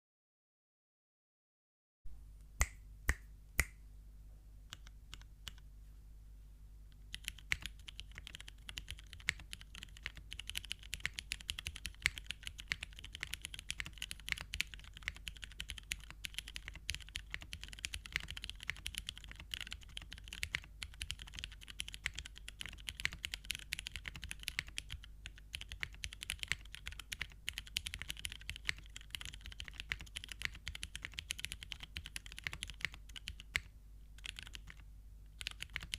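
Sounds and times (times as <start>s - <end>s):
mechanical keyboard typing: 7.1s - 34.8s, 35.4s - 35.9s.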